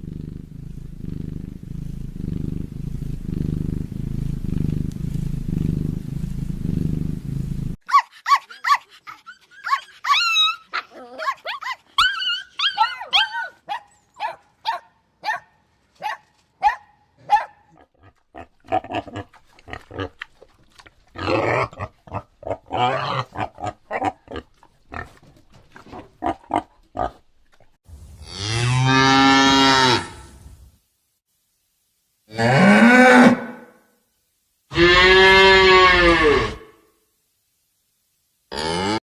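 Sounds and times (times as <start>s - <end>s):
cat purring: 0.0s - 7.8s
dog barking and yelping: 7.8s - 17.8s.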